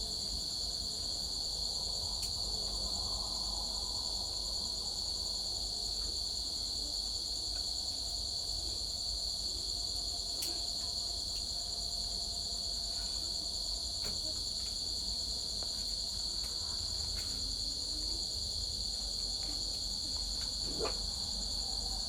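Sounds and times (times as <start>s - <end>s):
crickets chirping: 0.0s - 22.0s.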